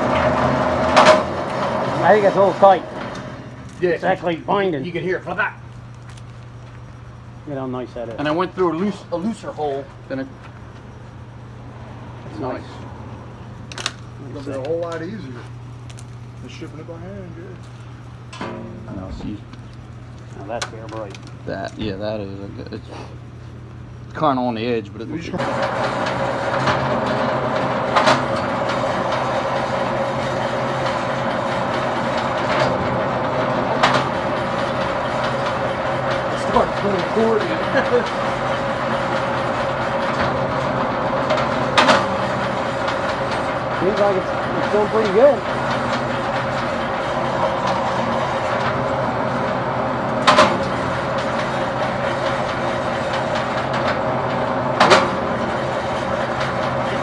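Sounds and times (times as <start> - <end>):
machine clacks: 0.0 - 5.6, 13.6 - 21.8, 25.3 - 57.0
wire stripping machine rattling: 0.0 - 6.7, 13.4 - 16.8, 18.1 - 21.7, 25.4 - 57.0.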